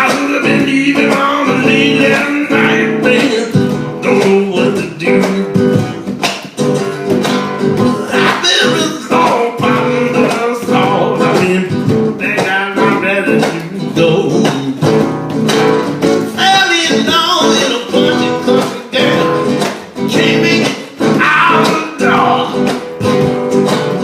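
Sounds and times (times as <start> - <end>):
drums: 0.0 - 24.0
strummed acoustic guitar: 0.0 - 24.0.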